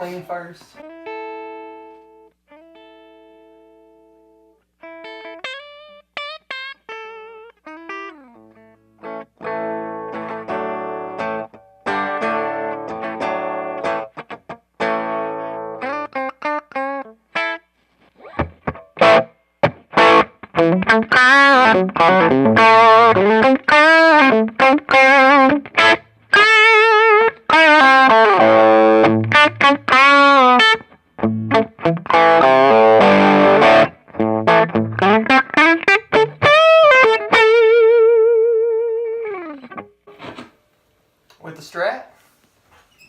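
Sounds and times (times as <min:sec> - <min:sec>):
electric guitar solo with bends: 0:00.8 - 0:40.0.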